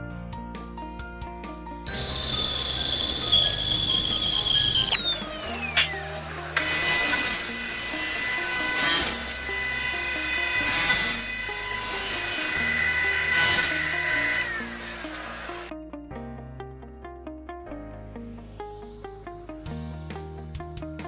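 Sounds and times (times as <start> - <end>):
stone saw whining: 1.9 - 15.7.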